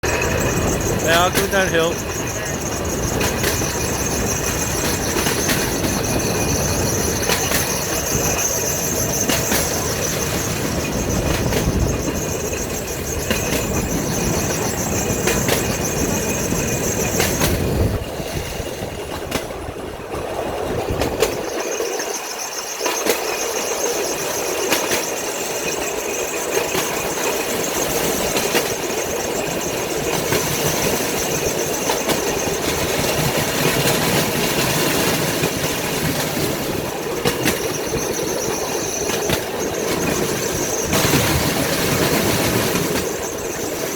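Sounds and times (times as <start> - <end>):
high wheel squeal: 0.0 - 17.5, 21.6 - 43.9
steel wheels rolling on track: 0.0 - 43.9
wheels clicking over rail joints: 0.0 - 43.9.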